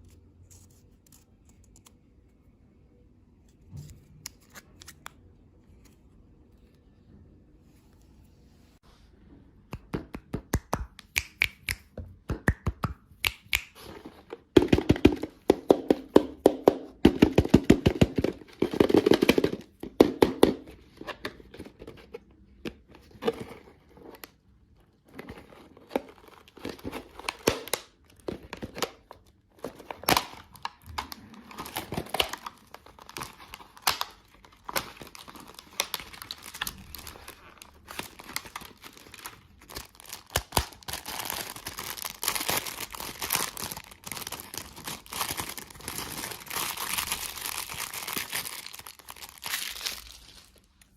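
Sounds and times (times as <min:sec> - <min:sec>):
candy wrapper tearing and crinkling: 0:25.9 - 0:50.9.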